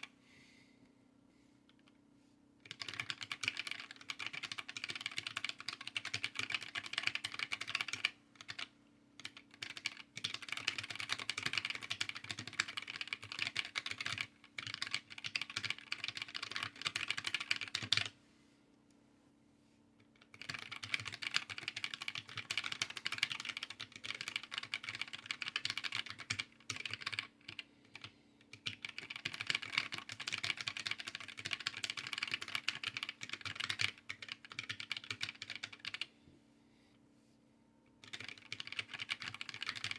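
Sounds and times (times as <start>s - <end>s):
fast mechanical keyboard typing: 2.6s - 18.1s, 20.2s - 36.1s, 38.0s - 39.9s.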